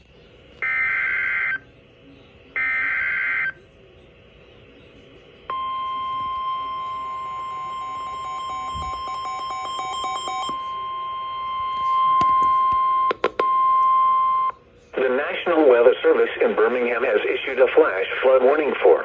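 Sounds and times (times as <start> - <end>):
high-pitched alarm tone: 5.5 - 14.5.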